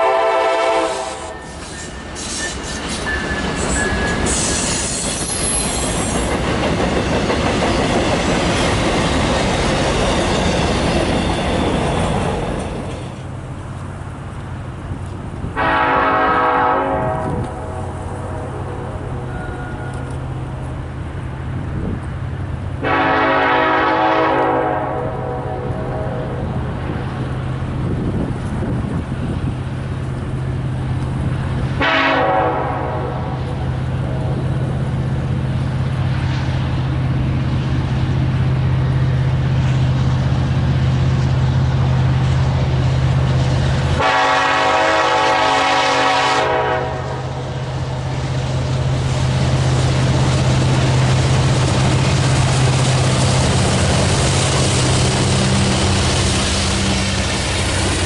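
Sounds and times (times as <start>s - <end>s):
locomotive horn blasts: 0.0s - 1.5s, 15.6s - 20.1s, 22.8s - 26.4s, 31.8s - 33.4s, 44.0s - 47.5s.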